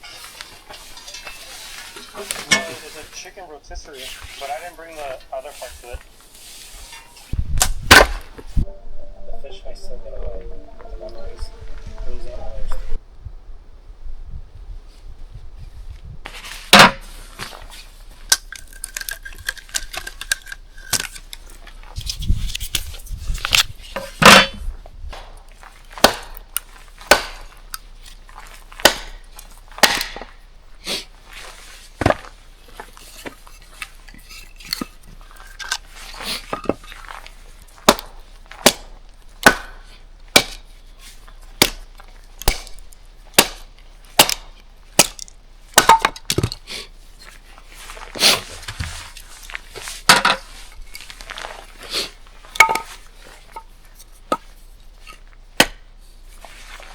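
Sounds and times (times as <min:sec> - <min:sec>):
camp gear clattering and knocking: 0:00.0 - 0:02.9, 0:31.4 - 0:38.4, 0:44.2 - 0:51.8, 0:52.4 - 0:55.3.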